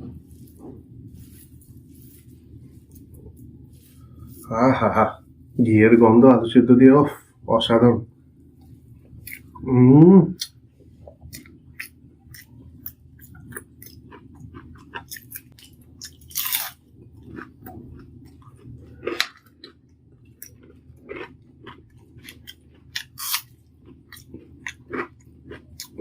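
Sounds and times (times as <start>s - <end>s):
close chewing with mouth clicks: 8.6s - 9.6s, 10.4s - 26.0s.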